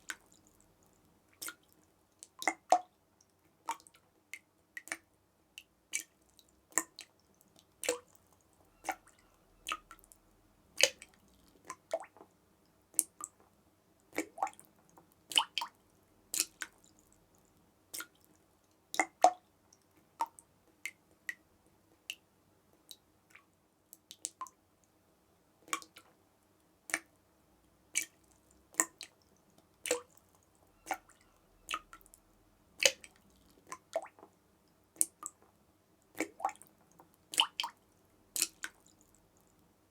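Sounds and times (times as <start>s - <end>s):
water drops plipping: 7.8s - 10.0s, 30.8s - 32.2s, 32.8s - 34.2s.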